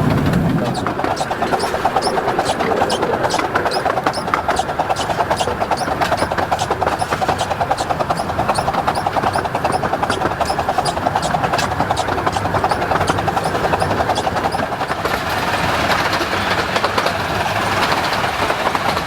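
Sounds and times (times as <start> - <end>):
miniature train running: 0.0 - 19.0
regular sharp tick: 0.1 - 15.0.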